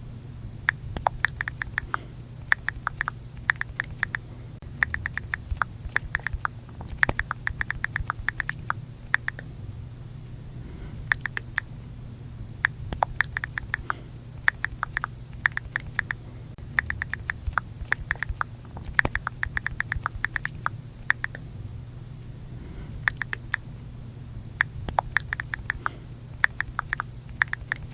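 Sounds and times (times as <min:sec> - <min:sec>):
phone keyboard clicks: 0:01.0 - 0:04.2, 0:04.8 - 0:09.4, 0:11.1 - 0:11.6, 0:12.9 - 0:16.2, 0:16.8 - 0:21.4, 0:23.1 - 0:23.6, 0:24.9 - 0:27.9.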